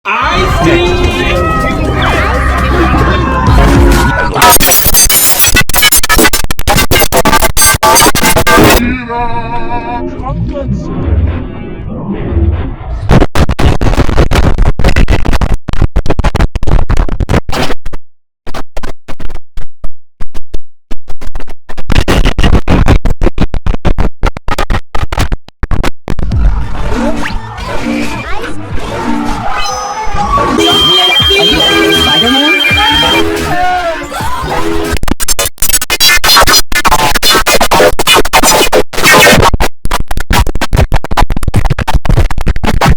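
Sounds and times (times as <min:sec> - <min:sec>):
chopped stuttering computer sound: 0:00.3 - 0:08.8, 0:13.1 - 0:19.4, 0:21.0 - 0:42.9
computer shutdown sound stuttering: 0:28.9 - 0:33.7.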